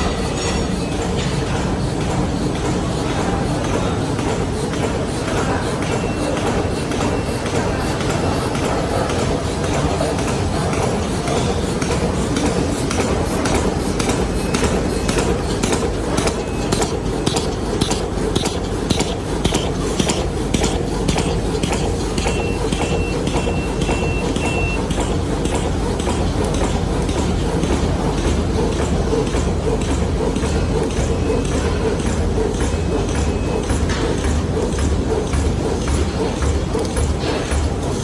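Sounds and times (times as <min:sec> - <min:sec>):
machine mechanical drone: 0:00.0 - 0:38.0
rhythmic machine clacks: 0:00.0 - 0:38.0.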